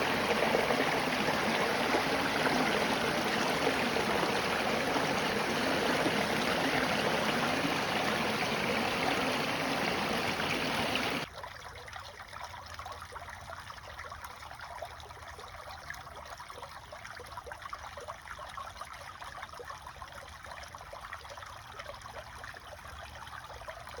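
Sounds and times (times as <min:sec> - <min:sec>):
stream water rushing: 0:00.0 - 0:11.3
faint water trickle: 0:00.0 - 0:24.0.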